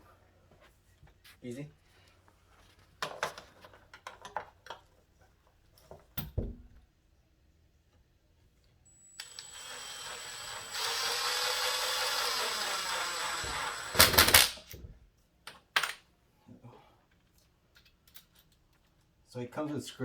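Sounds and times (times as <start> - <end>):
cordless screw gun motor: 9.0 - 14.7.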